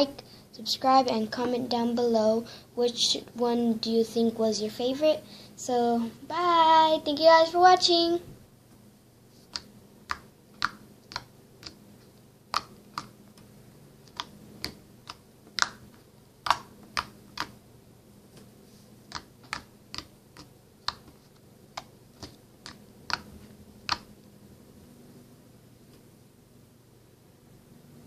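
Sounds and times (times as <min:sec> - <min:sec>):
slime popping when poked: 0:09.5 - 0:11.8, 0:16.4 - 0:17.5.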